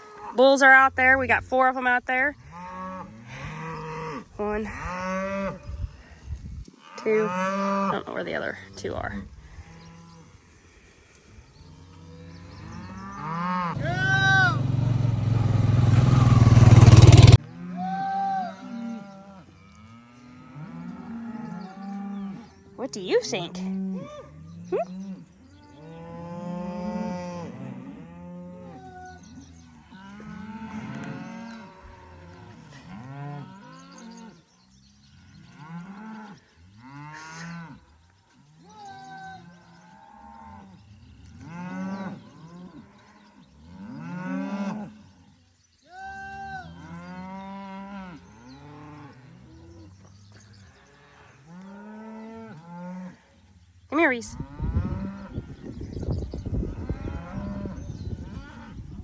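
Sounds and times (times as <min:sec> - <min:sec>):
cattle mooing: 0:06.8 - 0:09.1, 0:11.9 - 0:22.5.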